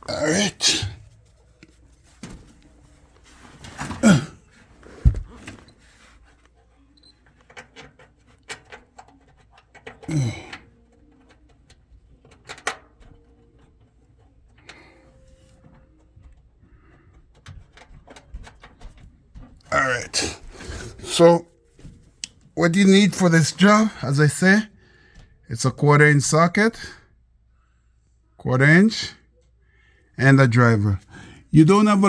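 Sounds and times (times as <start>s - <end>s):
person grunting: 0.1s - 1.0s, 4.0s - 4.4s, 10.1s - 10.6s.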